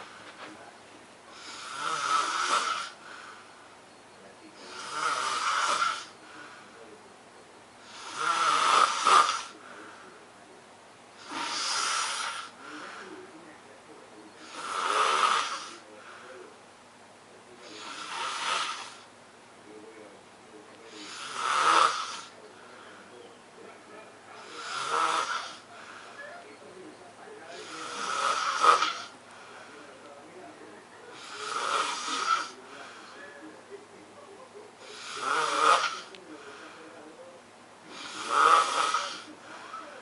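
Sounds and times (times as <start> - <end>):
person snoring: 1.3 - 3.4, 4.6 - 6.6, 7.8 - 9.7, 11.2 - 13.2, 14.4 - 15.8, 17.6 - 19.1, 20.9 - 23.1, 24.4 - 26.2, 27.5 - 29.8, 31.1 - 33.3, 34.8 - 36.9, 37.9 - 40.0.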